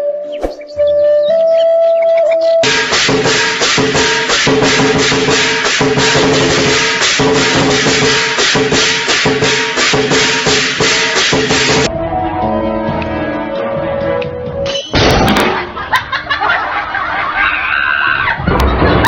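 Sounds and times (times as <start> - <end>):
drum percussion: 2.6 - 11.9
loud music: 2.6 - 14.6.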